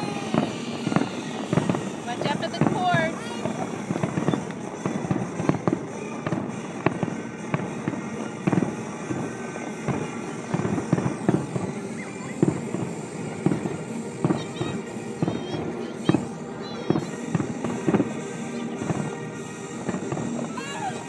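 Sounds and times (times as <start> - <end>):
fireworks bangs and pops: 0.0 - 21.0.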